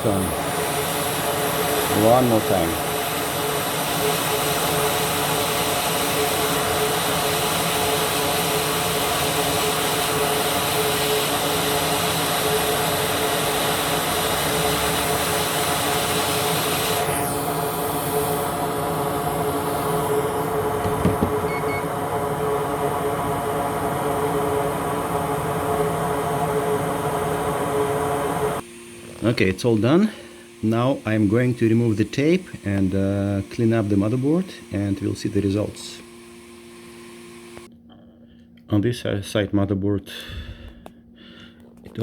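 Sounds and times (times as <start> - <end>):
air hiss: 0.0 - 21.7, 24.2 - 37.7
hot air blower hum: 0.0 - 37.7.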